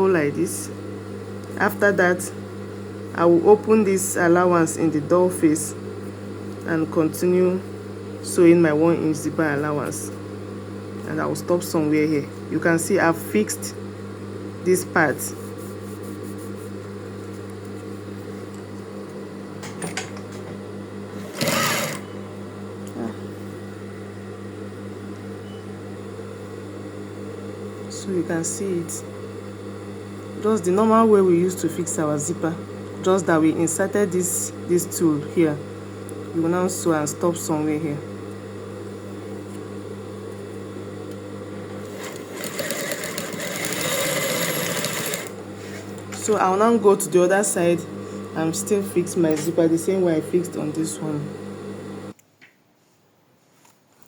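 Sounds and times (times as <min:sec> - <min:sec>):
electric sewing machine running: 0:21.1 - 0:22.1, 0:41.7 - 0:45.4.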